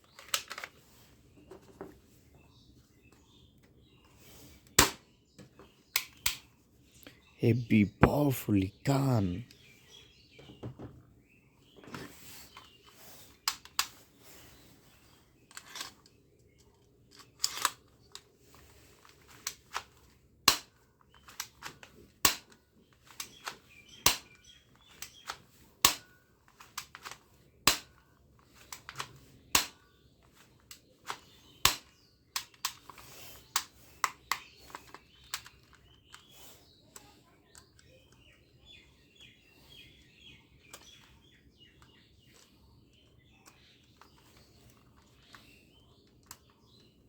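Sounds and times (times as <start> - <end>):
toy gun plastic clicks: 0.2 - 0.7, 17.2 - 17.8.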